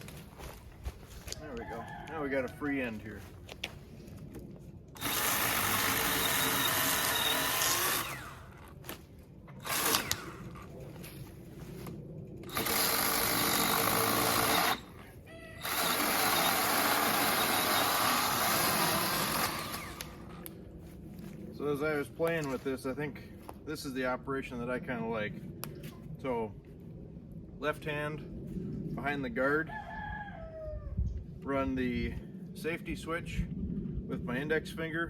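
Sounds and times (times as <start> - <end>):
electric chainsaw cutting wood: 5.0 - 10.7, 12.4 - 15.0, 15.6 - 20.5.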